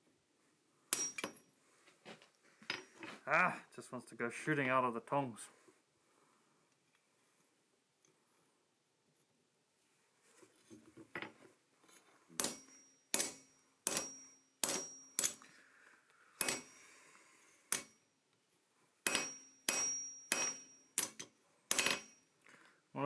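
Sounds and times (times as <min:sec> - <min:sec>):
hammer striking steel on anvil: 0:00.9 - 0:01.4, 0:12.4 - 0:15.4, 0:16.4 - 0:16.8, 0:19.0 - 0:22.2.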